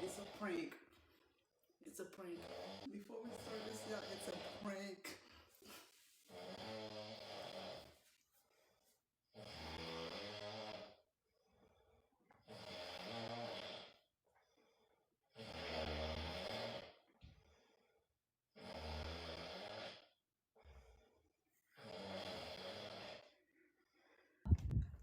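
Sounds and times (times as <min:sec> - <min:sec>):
man snoring: 0:00.0 - 0:00.7, 0:02.4 - 0:04.8, 0:06.3 - 0:07.9, 0:09.3 - 0:11.1, 0:12.4 - 0:14.1, 0:15.3 - 0:17.1, 0:18.5 - 0:20.2, 0:21.7 - 0:23.4.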